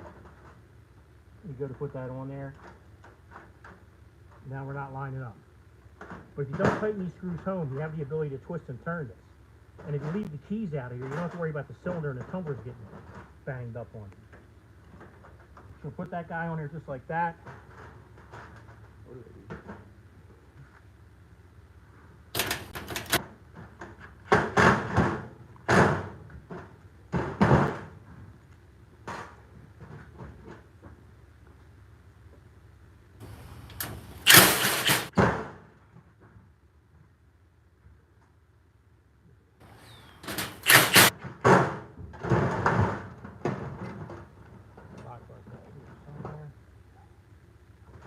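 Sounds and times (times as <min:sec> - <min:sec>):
metal scraping on garage door: 0:22.4 - 0:23.2, 0:33.4 - 0:35.2, 0:39.6 - 0:43.1
metallic clicks and rattles: 0:22.4 - 0:23.2.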